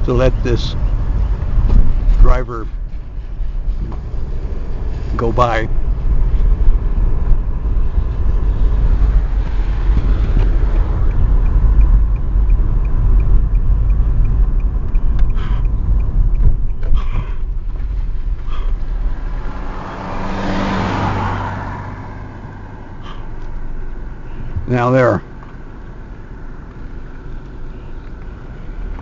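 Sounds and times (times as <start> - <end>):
road and engine rumble inside car: 0.0 - 29.0
knocks from tyres and body: 1.4 - 3.0
vehicle passing close by: 2.8 - 25.2
faint regular ticking: 9.2 - 18.1.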